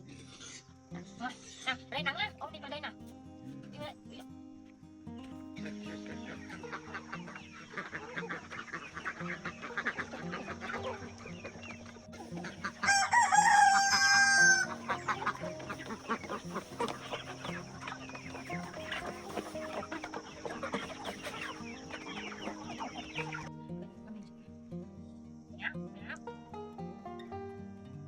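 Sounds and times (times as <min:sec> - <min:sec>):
chickens clucking: 0:05.2 - 0:23.6, 0:25.4 - 0:27.4
rooster crowing: 0:12.4 - 0:17.6.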